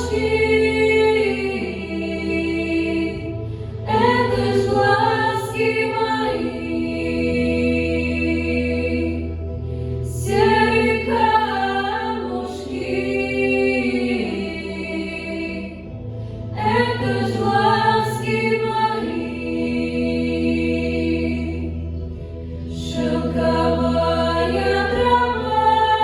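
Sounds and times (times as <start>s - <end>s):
children's choir singing: 0.0s - 9.3s, 10.2s - 15.8s, 22.8s - 26.0s
backing track of sustained chords: 0.0s - 26.0s.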